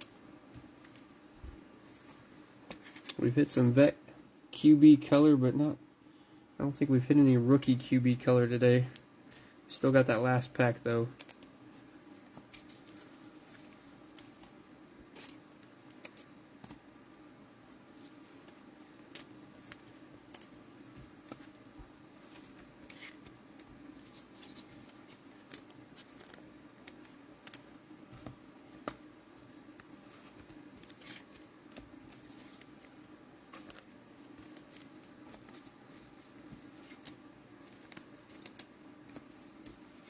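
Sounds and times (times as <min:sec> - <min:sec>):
low room hum: 0:00.0 - 0:40.0
cards and wrappers rustling: 0:12.1 - 0:16.8, 0:18.0 - 0:40.0.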